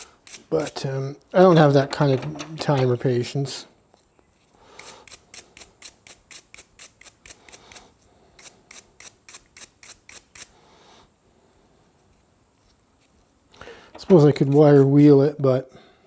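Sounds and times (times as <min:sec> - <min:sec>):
hand scraping grime off metal: 0:13.9 - 0:15.1.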